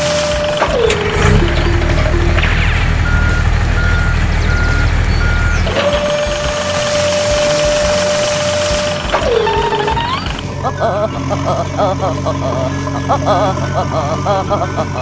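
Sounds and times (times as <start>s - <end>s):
reversing alarm beeping: 0.0s - 13.0s
long steady tone: 0.0s - 15.0s
low engine rumble: 0.0s - 15.0s.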